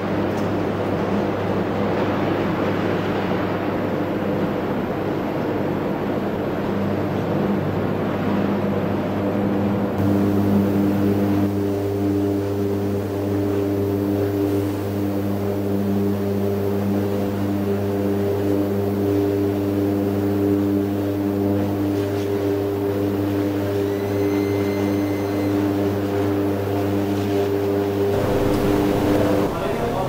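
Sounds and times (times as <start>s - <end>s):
arc furnace electrical hum: 0.0s - 30.0s
rushing noise: 28.1s - 30.0s.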